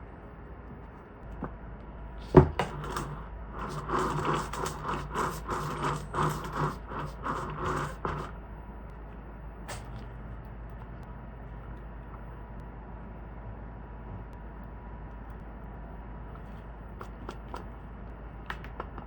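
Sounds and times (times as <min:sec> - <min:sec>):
kitchen utensil strokes in bowl: 0:02.6 - 0:08.3.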